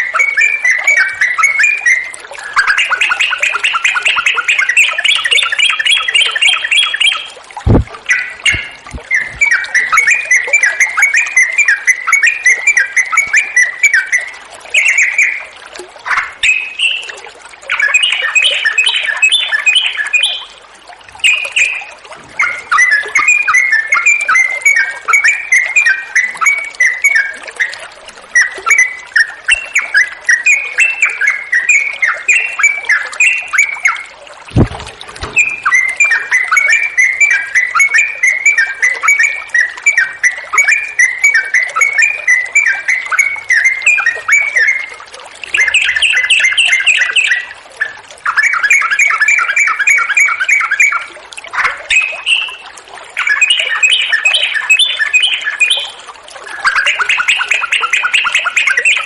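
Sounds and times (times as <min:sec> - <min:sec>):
bulbul singing: 0:00.0 - 0:15.5, 0:16.1 - 0:20.5, 0:21.2 - 0:27.8, 0:28.4 - 0:56.0, 0:56.6 - 0:59.0
low thump: 0:07.6 - 0:09.1, 0:34.5 - 0:35.5.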